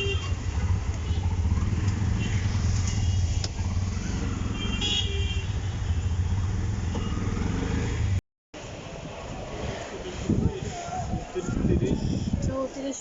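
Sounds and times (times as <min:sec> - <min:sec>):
car horn toot: 0:00.0 - 0:00.4, 0:04.5 - 0:06.2
road traffic rumble: 0:00.0 - 0:13.0.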